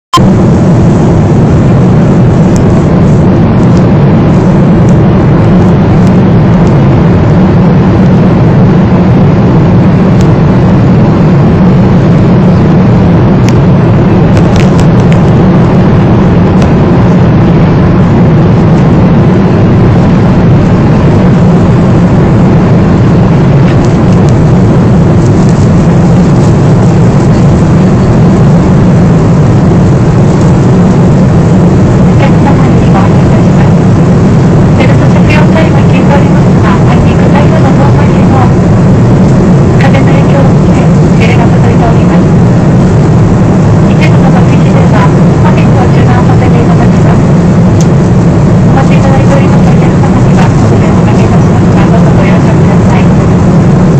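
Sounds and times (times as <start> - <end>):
jet cabin drone: 0.0 - 53.9.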